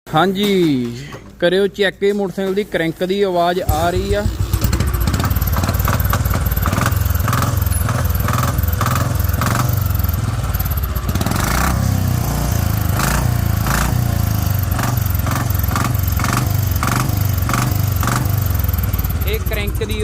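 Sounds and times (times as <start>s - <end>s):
motorcycle engine running: 3.6s - 20.0s
repeating crankshaft knock: 3.7s - 11.9s, 12.5s - 20.0s.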